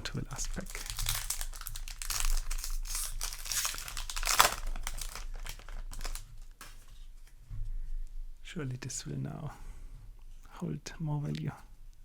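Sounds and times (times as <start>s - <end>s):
foil wrapper crinkling and tearing: 0.0s - 7.0s.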